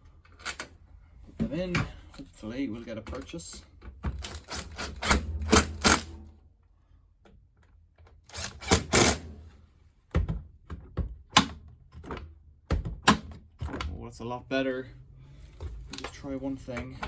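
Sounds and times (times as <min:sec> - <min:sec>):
screwdriver clicking and clatter: 0:04.2 - 0:06.1, 0:08.0 - 0:09.2.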